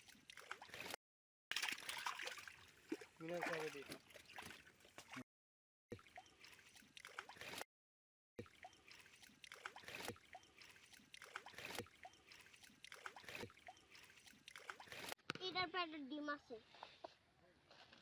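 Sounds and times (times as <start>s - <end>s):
water sloshing and trickling: 0.0s - 5.3s, 5.9s - 7.7s, 8.4s - 15.2s.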